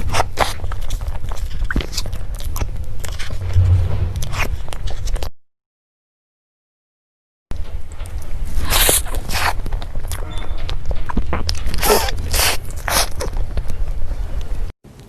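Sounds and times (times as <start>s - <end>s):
steady low rumble: 3.0s - 5.3s.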